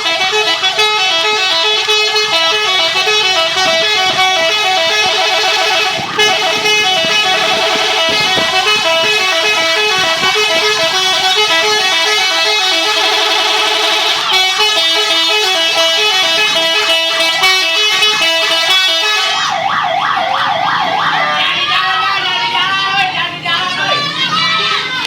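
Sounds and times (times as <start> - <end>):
multi-tone bus air horn tune: 0.0 - 19.6.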